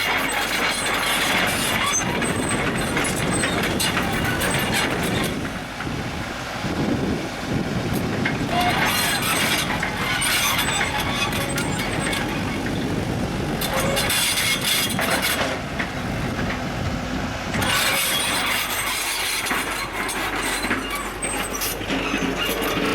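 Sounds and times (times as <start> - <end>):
bulldozer engine running: 0.0 - 22.9
tracks and blade clanking: 7.8 - 22.9.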